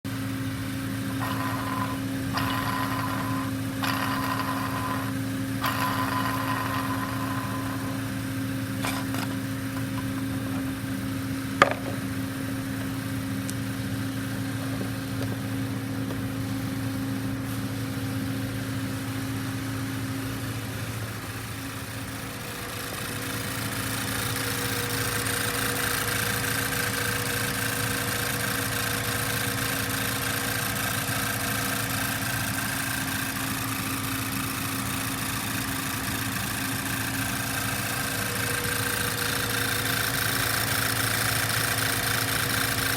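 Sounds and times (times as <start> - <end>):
higher whine: 1.1 - 11.2.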